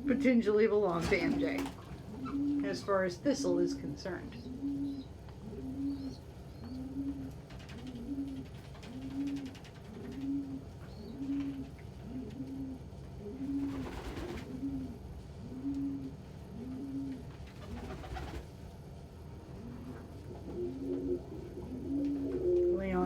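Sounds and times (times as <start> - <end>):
pigeons cooing: 0.0 - 18.5, 19.4 - 23.0
wings rustling: 0.9 - 2.8, 13.6 - 14.6.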